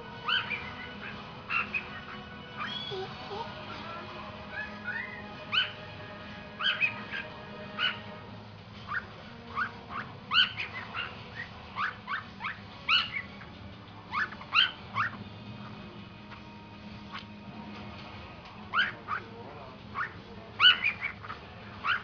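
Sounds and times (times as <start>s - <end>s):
bird imitating dog barks: 0.2s - 3.6s, 4.4s - 8.2s, 8.8s - 13.5s, 14.1s - 15.2s, 18.7s - 19.3s, 19.9s - 22.0s.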